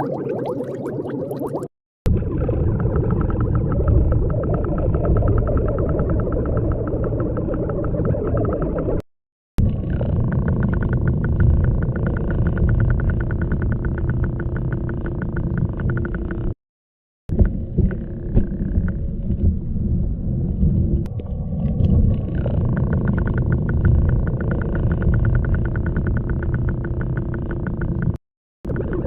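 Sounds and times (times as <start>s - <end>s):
low rumbling pulsing noise: 2.1s - 9.0s, 9.6s - 16.6s, 17.3s - 29.0s.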